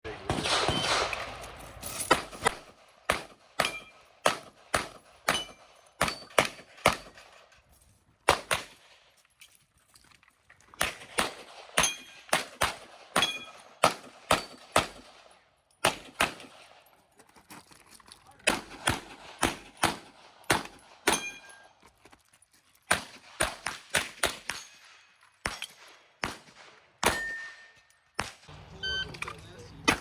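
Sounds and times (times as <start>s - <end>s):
rapid pistol fire: 0.3s - 1.4s, 2.1s - 7.1s, 18.5s - 21.2s.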